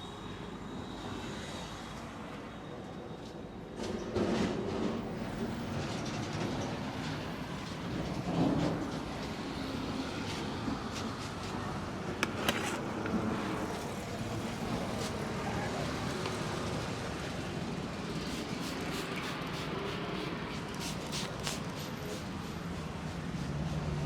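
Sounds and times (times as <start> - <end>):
road traffic noise: 0.0 - 24.0.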